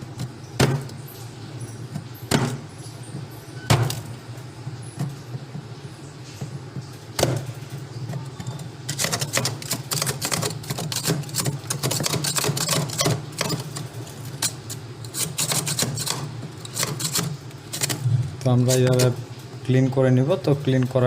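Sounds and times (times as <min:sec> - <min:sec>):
clicking and scraping of ice: 0:08.1 - 0:18.1.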